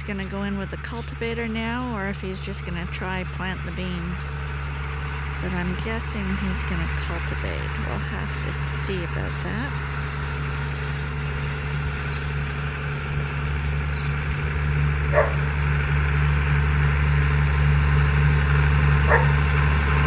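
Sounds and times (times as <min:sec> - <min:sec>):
tractor engine running: 0:00.0 - 0:20.0
dog barking: 0:15.1 - 0:15.5, 0:19.0 - 0:19.4.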